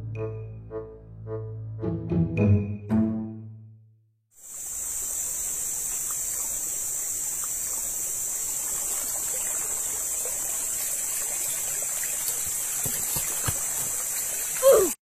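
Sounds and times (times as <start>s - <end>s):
high-pitched hiss: 4.4s - 12.8s
trickling water: 4.4s - 15.0s.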